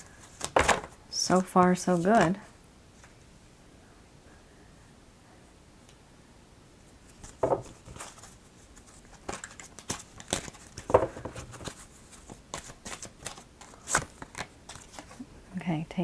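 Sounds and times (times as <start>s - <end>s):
cards being shuffled: 0.0s - 2.4s, 7.2s - 15.2s.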